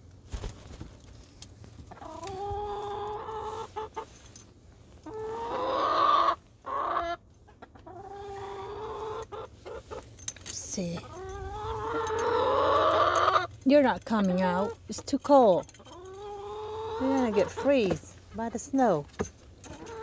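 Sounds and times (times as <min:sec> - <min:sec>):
chickens calling: 0:01.8 - 0:04.2, 0:05.0 - 0:10.2, 0:10.9 - 0:13.6, 0:15.8 - 0:18.5, 0:19.6 - 0:20.0.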